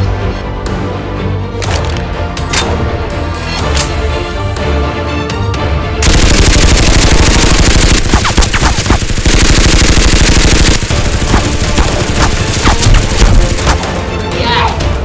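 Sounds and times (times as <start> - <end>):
background music: 0.0 - 15.0
rapid automatic gunfire: 6.0 - 13.9.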